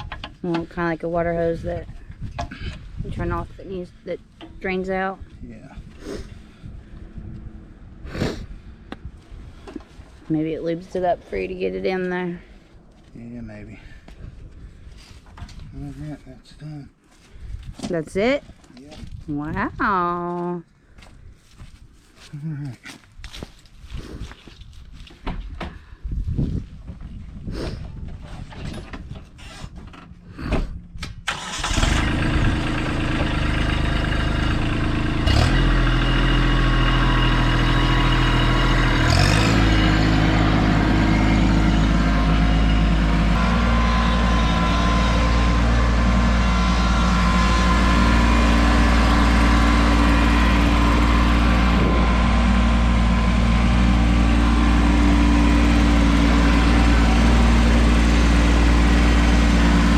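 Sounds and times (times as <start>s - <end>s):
tractor engine running: 0.0s - 12.8s, 30.0s - 59.9s.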